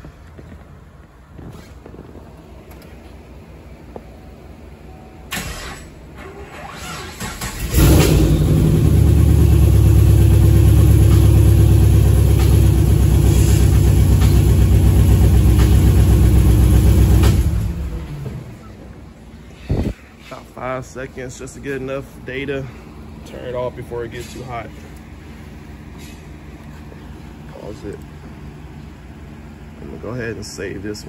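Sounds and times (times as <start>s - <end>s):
car engine cranking: 5.3s - 18.8s
car engine running: 7.6s - 19.1s.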